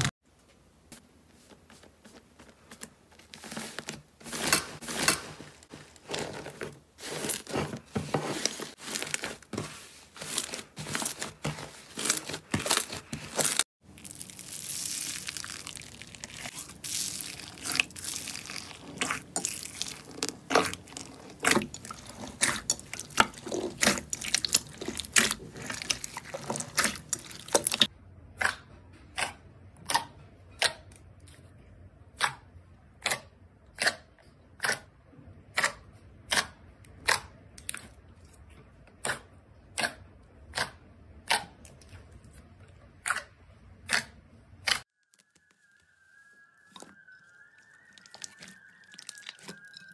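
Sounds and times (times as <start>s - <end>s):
crackles: 8.4s - 27.9s, 44.7s - 49.9s.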